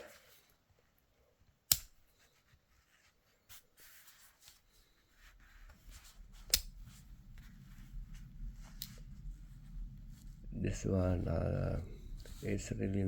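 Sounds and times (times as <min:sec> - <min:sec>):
metal tool clicks: 0:01.7 - 0:02.0
low handling rumble: 0:05.8 - 0:13.0.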